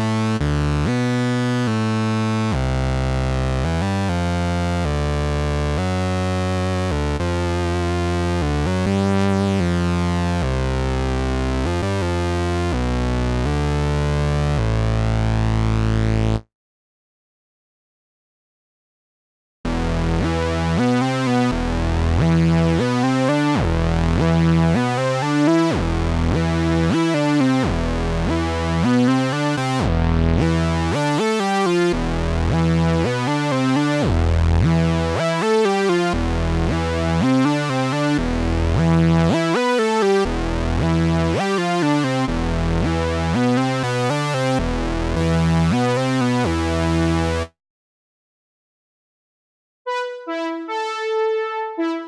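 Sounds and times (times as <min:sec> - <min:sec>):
synthesizer bass sequence: 0:00.0 - 0:16.5, 0:19.7 - 0:47.6, 0:49.9 - 0:52.0.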